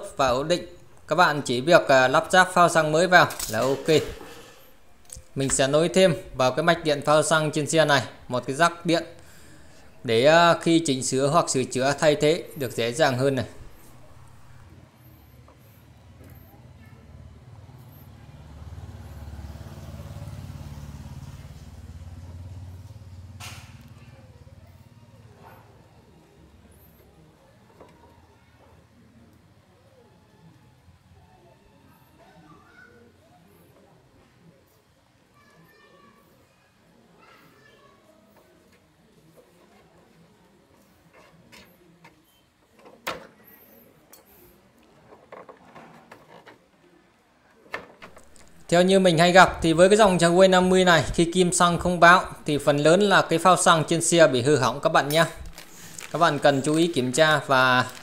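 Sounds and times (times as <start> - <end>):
hands rustling with wiring: 3.2 - 5.6, 48.0 - 48.7, 54.6 - 58.0.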